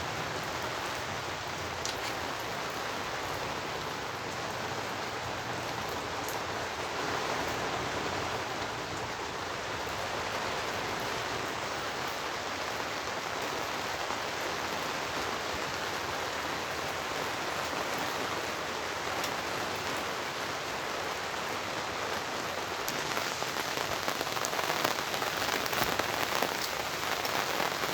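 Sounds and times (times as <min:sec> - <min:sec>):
heavy rain falling: 0:00.0 - 0:27.9
sharp raindrop hits: 0:22.9 - 0:27.9.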